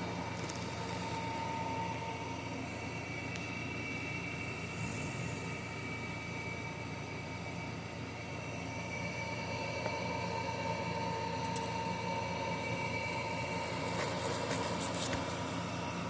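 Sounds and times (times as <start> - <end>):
small electric motor whining: 0.0 - 16.0.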